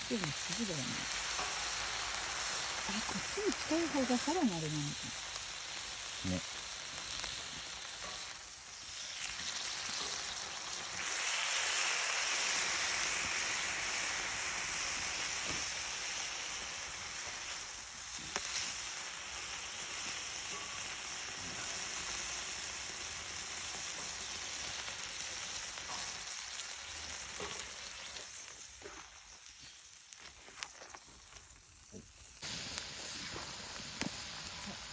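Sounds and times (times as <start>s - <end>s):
fire crackles: 0.0s - 34.9s
food sizzling on a grill: 0.0s - 34.9s.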